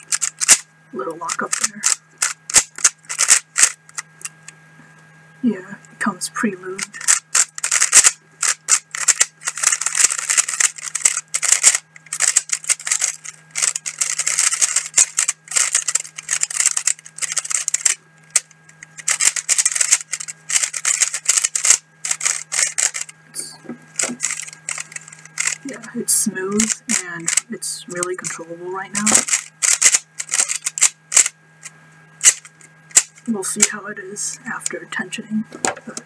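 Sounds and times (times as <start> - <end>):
puzzle cube clicking turns: 0.0 - 0.6, 1.3 - 4.0, 6.8 - 23.1, 24.0 - 25.9, 26.6 - 28.1, 29.0 - 31.3, 32.2 - 33.7
low electrical hum: 0.0 - 36.0.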